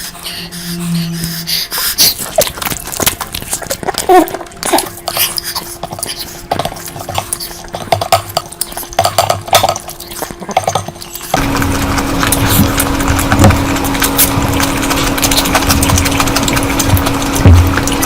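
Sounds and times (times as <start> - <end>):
person chewing food: 1.3 - 18.0
dishes clinking: 9.1 - 11.1.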